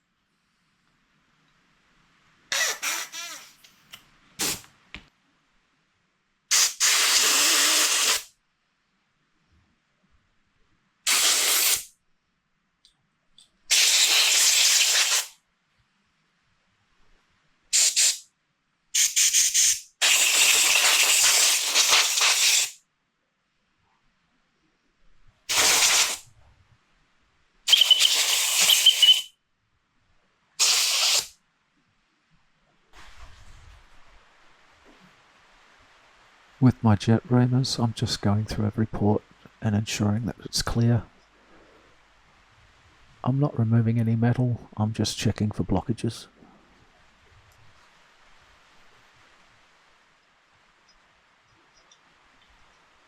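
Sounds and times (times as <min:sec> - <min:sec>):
compressed air bursts hissing: 0:04.4 - 0:04.7, 0:06.5 - 0:08.3, 0:11.1 - 0:11.9, 0:13.7 - 0:15.4, 0:17.7 - 0:18.3, 0:19.0 - 0:22.8, 0:25.5 - 0:26.2, 0:27.7 - 0:29.3, 0:30.6 - 0:31.4
thin whistle: 0:27.7 - 0:29.4.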